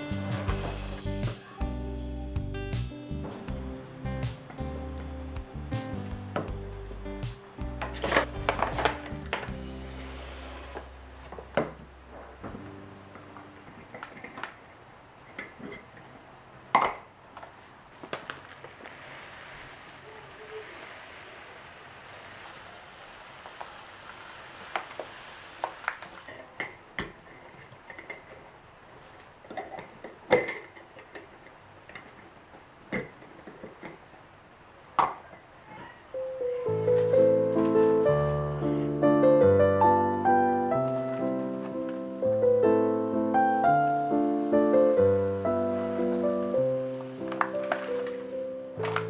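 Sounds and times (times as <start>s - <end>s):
soft hiss: 0.0s - 16.2s, 17.3s - 49.0s
kitchen items knocking and clinking: 29.4s - 34.0s.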